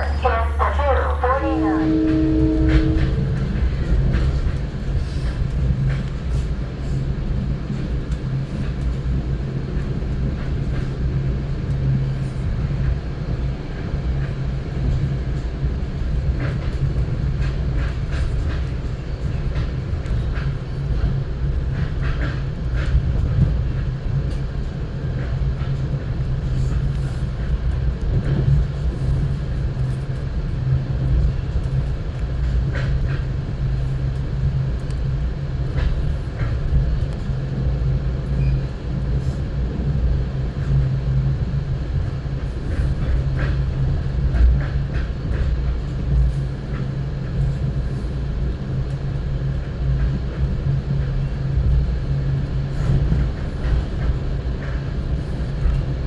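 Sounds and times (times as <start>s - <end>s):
constant low hum: 0.0s - 6.3s
train rumbling: 0.0s - 56.0s.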